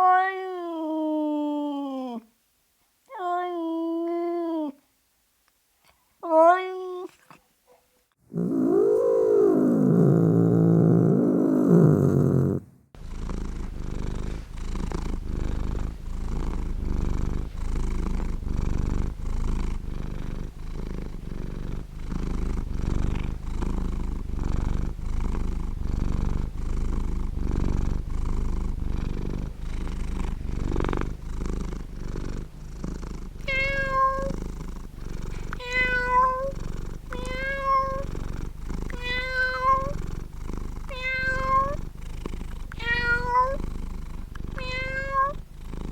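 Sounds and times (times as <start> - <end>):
cat meowing: 0.0 - 1.8, 3.1 - 4.8, 6.2 - 7.2, 33.4 - 34.4, 35.5 - 38.0, 38.9 - 40.0, 40.9 - 41.8, 42.7 - 43.6, 44.6 - 45.4
cat purring: 8.2 - 45.9.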